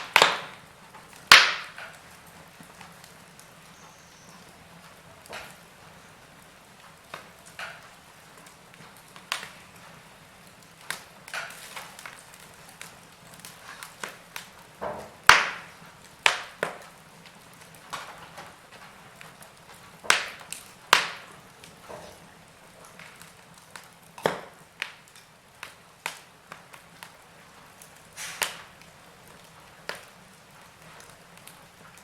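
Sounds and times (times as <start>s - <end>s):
faint hiss: 0.0s - 17.6s, 24.3s - 31.8s
wood fire crackling: 0.0s - 32.0s.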